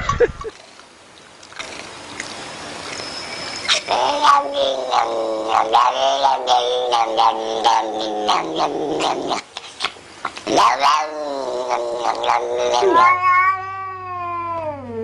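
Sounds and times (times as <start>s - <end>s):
cat yowling: 3.7s - 9.1s, 10.5s - 15.0s.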